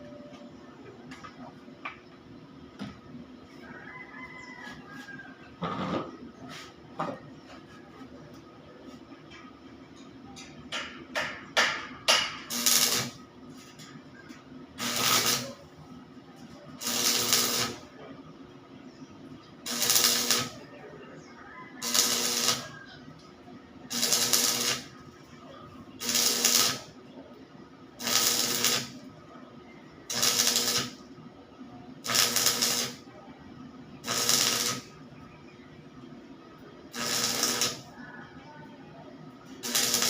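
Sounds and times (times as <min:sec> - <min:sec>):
electric welding bursts: 0:12.5 - 0:13.2, 0:14.8 - 0:15.6, 0:16.8 - 0:17.8, 0:19.6 - 0:20.6, 0:21.8 - 0:22.7, 0:23.9 - 0:25.0, 0:26.0 - 0:27.0, 0:28.0 - 0:29.1, 0:30.1 - 0:31.0, 0:32.0 - 0:33.1, 0:34.0 - 0:34.9, 0:36.9 - 0:37.9, 0:39.6 - 0:40.0.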